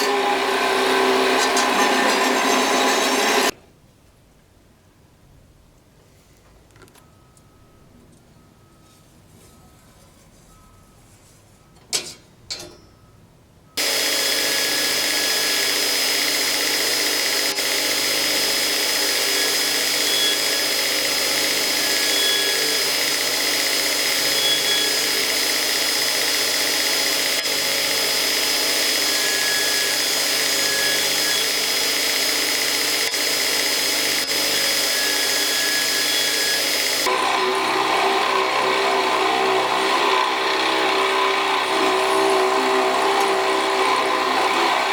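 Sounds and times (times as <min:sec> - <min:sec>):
electric grinder whining: 0:00.0 - 0:03.6, 0:13.8 - 0:44.9.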